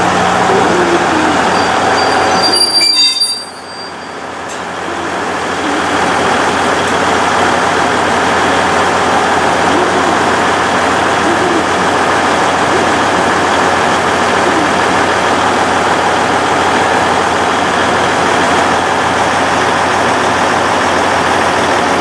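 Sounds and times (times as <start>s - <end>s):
high-pitched squeal: 0.0s - 6.2s
train rumbling on rails: 0.0s - 22.0s.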